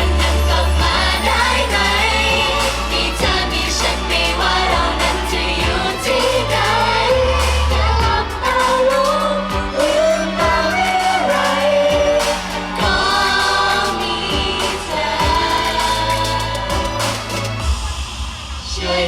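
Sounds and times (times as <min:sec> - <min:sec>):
backing music with steady beat: 0:00.0 - 0:19.0
voices singing pop song: 0:00.0 - 0:19.0.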